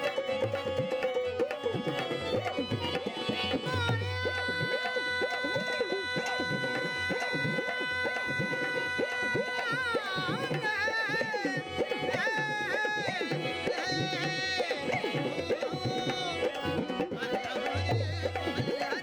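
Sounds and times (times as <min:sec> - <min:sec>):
man singing ornamented melody: 0:00.0 - 0:19.0.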